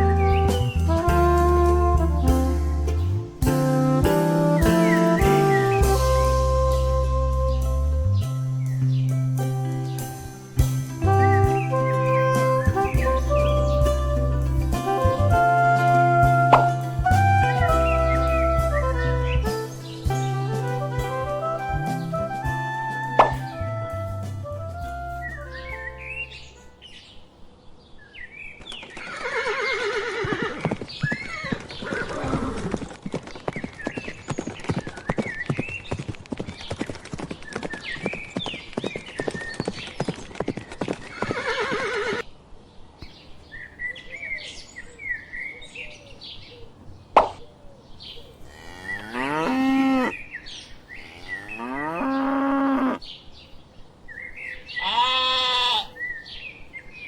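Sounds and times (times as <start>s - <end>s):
horse hoofbeats: 10.6s - 25.6s
cattle lowing: 11.1s - 20.2s, 46.5s - 53.6s
horse whinnying: 54.8s - 56.0s.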